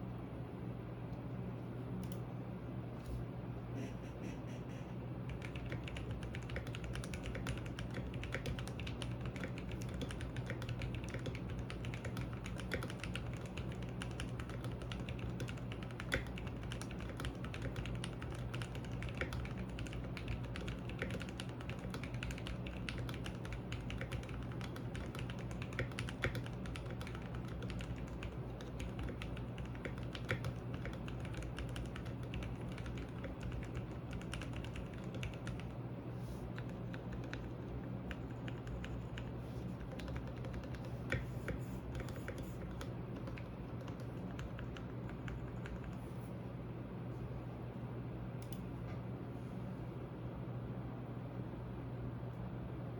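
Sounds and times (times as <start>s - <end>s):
mechanical keyboard typing: 5.2s - 35.8s, 36.4s - 46.0s.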